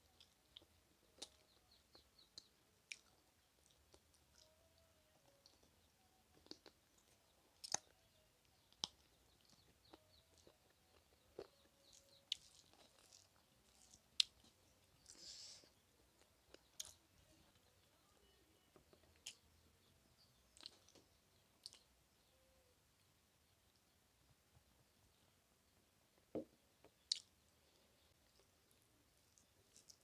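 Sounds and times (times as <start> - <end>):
quiet chewing: 0.0 - 30.0
breathy hiss: 15.1 - 15.7
mouth clicks and smacks: 20.5 - 21.9, 26.2 - 27.4.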